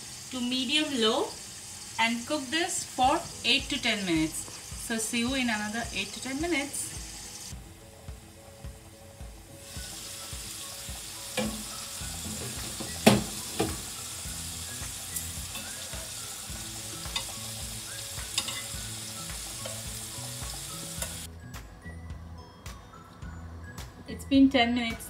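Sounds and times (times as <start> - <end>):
chicken frying in oil: 0.0 - 7.5, 9.6 - 21.3.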